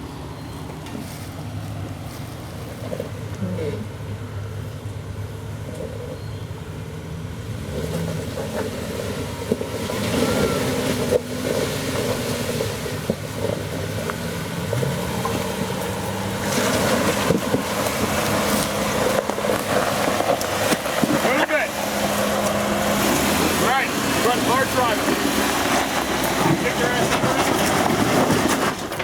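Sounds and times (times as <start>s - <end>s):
engine pulling under load: 0.0s - 29.0s
tyres grinding over rock: 7.6s - 29.0s.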